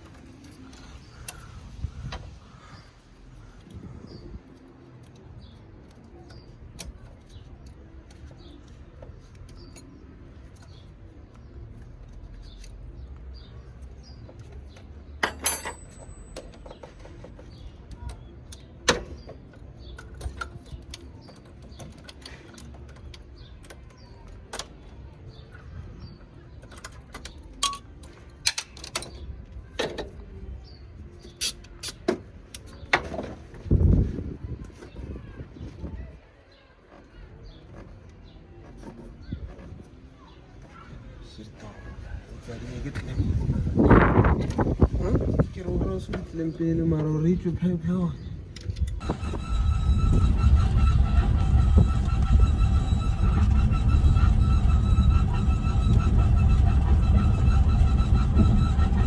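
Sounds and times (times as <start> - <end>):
low background rumble: 43.2 - 59.0.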